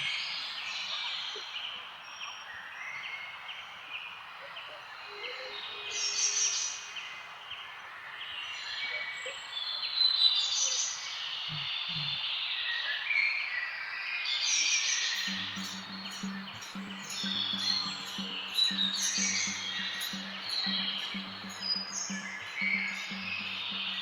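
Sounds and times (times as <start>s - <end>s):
birds chirping: 11.2s - 12.5s, 15.2s - 24.0s.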